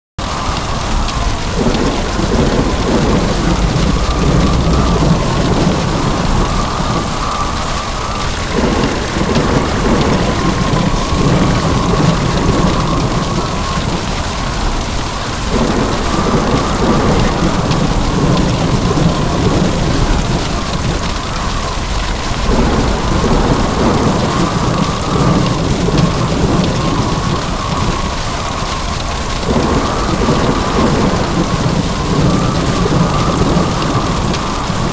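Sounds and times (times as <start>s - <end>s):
heavy rain: 0.2s - 34.9s
thunder rumbling: 0.2s - 34.9s.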